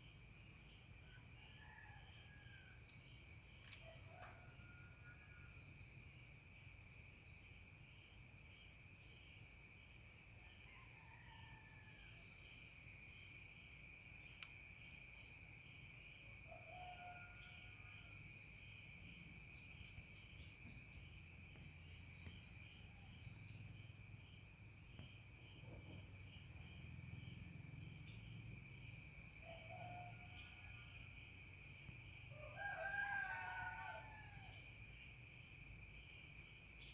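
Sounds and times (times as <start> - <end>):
crickets trilling: 0.0 - 36.9
rooster crowing: 16.5 - 18.1, 29.4 - 30.8, 32.3 - 34.6.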